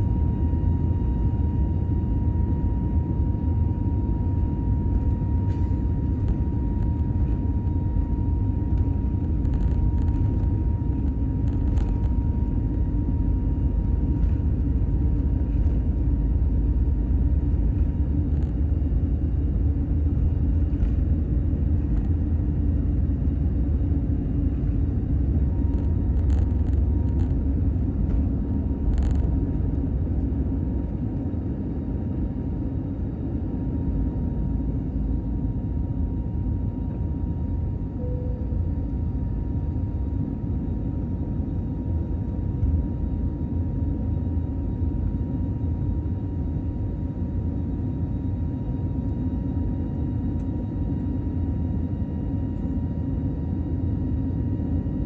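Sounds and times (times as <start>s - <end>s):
aircraft cabin engine rumble: 0.0s - 55.0s
faint high tone: 38.0s - 38.5s.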